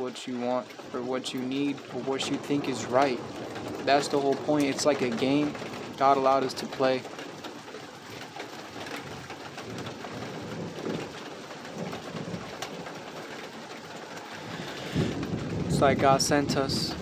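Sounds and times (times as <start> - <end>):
steady rain falling: 0.0 - 17.0.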